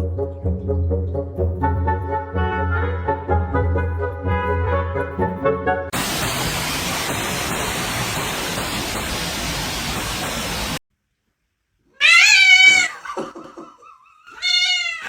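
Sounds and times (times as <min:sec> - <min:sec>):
steady hiss: 0:06.0 - 0:10.8
cat meowing loudly: 0:12.0 - 0:13.0, 0:14.3 - 0:15.0.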